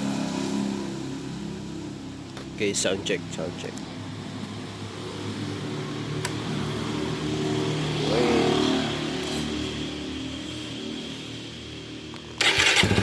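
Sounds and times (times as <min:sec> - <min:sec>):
motorcycle idling: 0:12.4 - 0:13.0.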